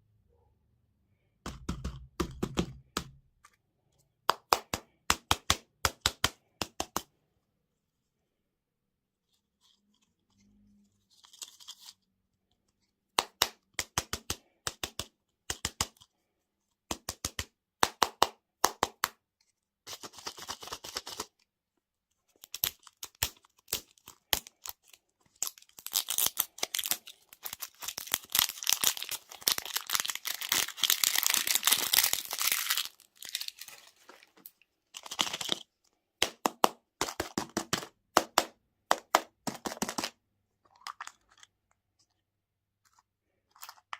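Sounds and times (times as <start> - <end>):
plastic packaging crinkling and tearing: 22.4 - 35.6.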